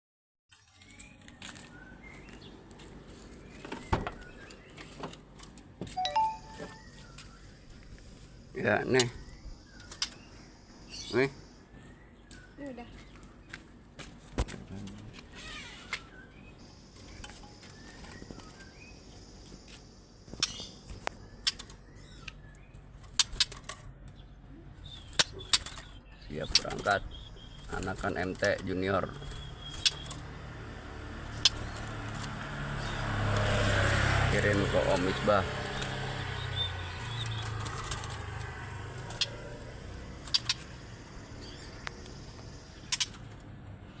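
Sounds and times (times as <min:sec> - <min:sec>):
steady high thin tone: 0:06.0 - 0:06.9
bird wings fluttering: 0:36.9 - 0:39.3.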